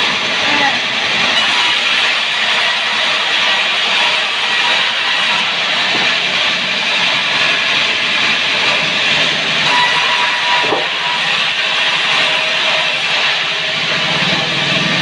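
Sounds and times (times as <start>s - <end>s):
saw cutting through log: 0.0s - 15.0s.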